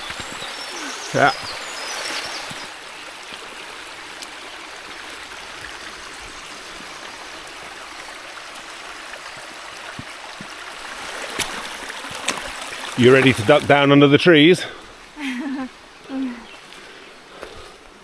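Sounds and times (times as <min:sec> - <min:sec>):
stream rushing: 0:00.0 - 0:18.0.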